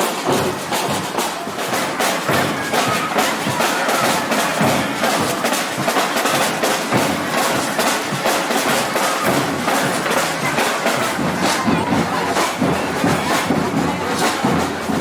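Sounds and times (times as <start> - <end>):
clicking hand percussion: 0.0 - 15.0
samba drums playing: 0.0 - 15.0.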